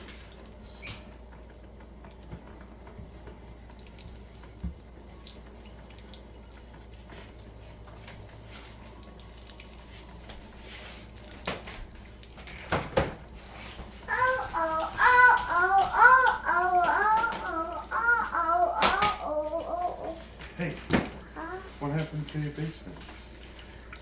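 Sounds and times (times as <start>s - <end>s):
water dripping: 3.5s - 10.5s, 14.0s - 20.6s, 21.4s - 24.0s.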